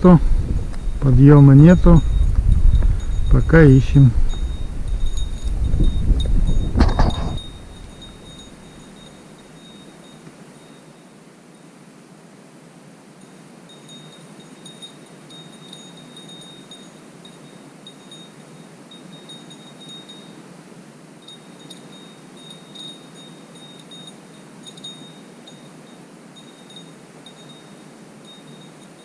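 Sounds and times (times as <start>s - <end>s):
low background rush: 0.0s - 10.6s
small bell tinkling: 0.7s - 11.7s, 13.2s - 20.4s, 21.2s - 29.0s.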